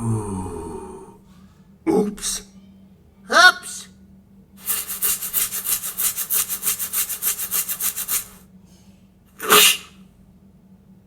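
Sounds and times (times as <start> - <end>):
rapid back-and-forth rasping: 4.6 - 8.4.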